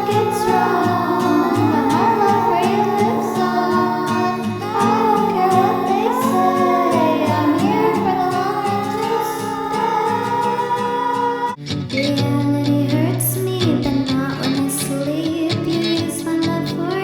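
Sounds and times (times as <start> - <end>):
accompaniment chords: 0.0 - 11.6
person singing a melody: 0.0 - 17.0.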